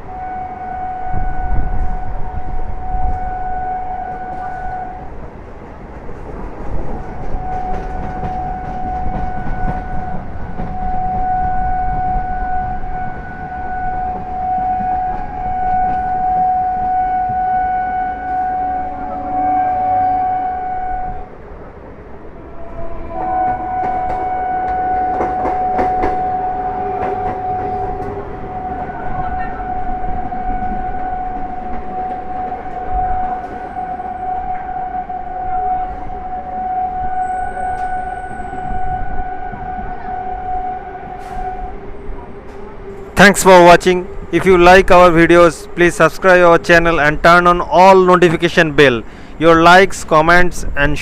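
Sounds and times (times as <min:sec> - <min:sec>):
train horn: 0:00.0 - 0:05.3, 0:06.8 - 0:21.4, 0:22.2 - 0:50.4
train running noise: 0:00.0 - 0:51.0.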